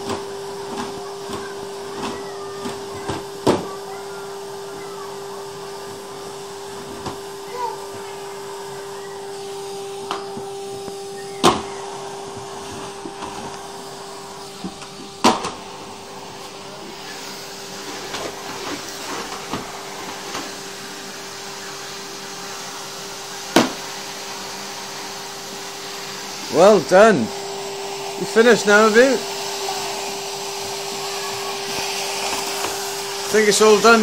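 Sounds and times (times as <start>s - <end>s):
vacuum cleaner running: 0.0s - 34.0s.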